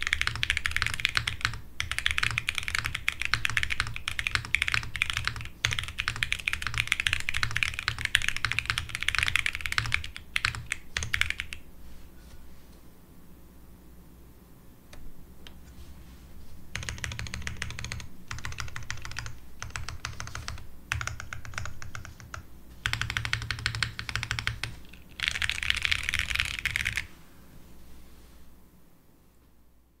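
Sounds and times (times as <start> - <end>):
typing on mechanical keyboard: 0.0 - 11.6, 16.8 - 27.1.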